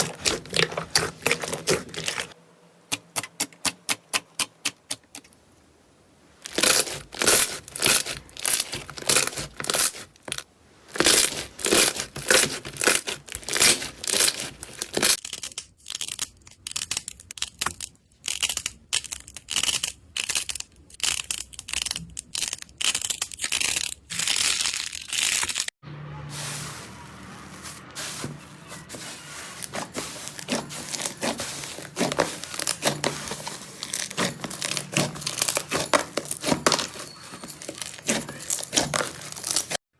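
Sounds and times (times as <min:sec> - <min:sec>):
slime crackling and popping: 0:06.5 - 0:15.3
fine crackling: 0:24.7 - 0:39.8.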